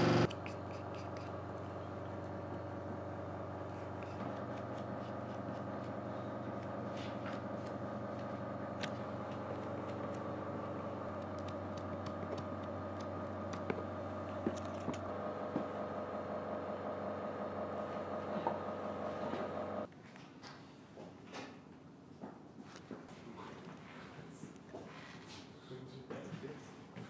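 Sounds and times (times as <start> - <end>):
steady motor hum: 0.0 - 19.9.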